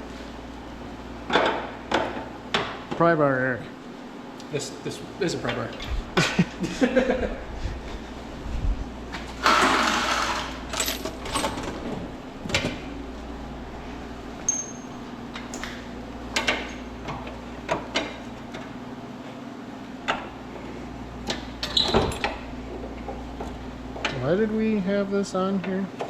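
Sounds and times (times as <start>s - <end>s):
steady low hum: 0.0s - 26.0s
metal tools clinking: 14.4s - 17.0s.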